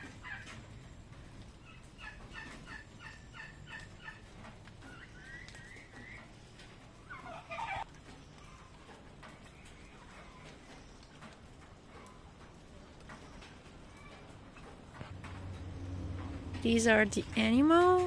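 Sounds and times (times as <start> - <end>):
turkeys calling: 0.0 - 0.8, 1.6 - 11.2.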